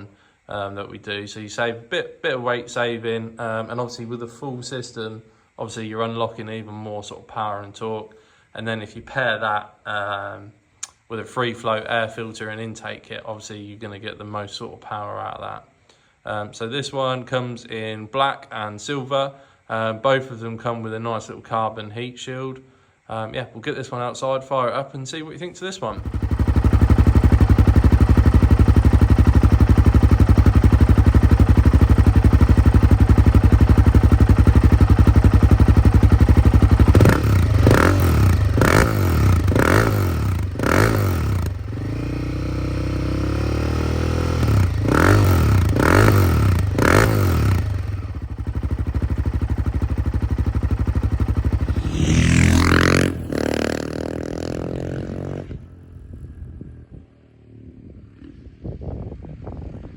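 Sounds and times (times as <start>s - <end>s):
engine revving: 26.0s - 48.3s, 50.9s - 55.8s
engine throttle blips: 26.0s - 56.1s
motorcycle engine idling: 26.0s - 57.2s.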